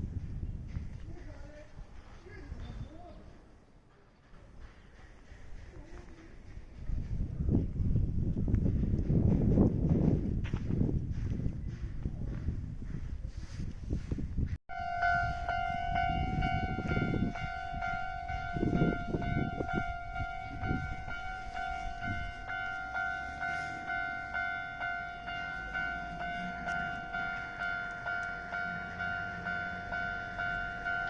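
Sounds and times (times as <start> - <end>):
train rumbling past: 0.0 - 13.3, 13.9 - 31.0
level crossing warning bell: 14.7 - 31.0.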